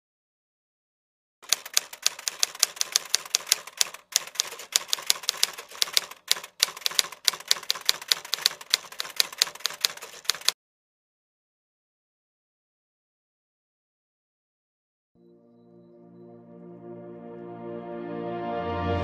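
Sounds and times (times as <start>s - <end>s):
typewriter keys clacking: 1.4s - 10.6s.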